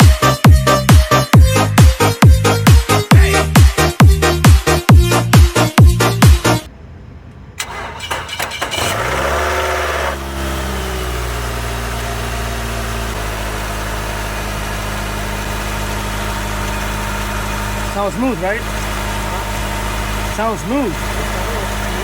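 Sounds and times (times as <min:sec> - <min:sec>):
car engine idling: 0:00.0 - 0:22.0
car engine starter cranking: 0:07.6 - 0:22.0.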